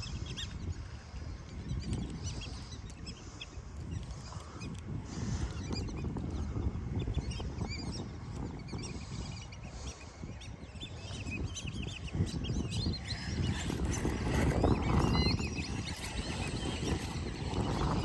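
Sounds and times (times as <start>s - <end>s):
birds chirping: 0.0s - 18.0s
low rumble on microphone: 3.9s - 18.0s.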